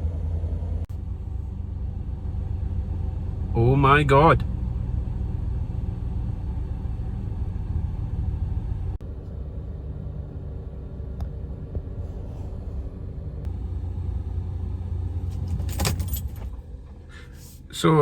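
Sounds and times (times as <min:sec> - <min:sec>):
pickup engine idling: 0:08.3 - 0:18.0.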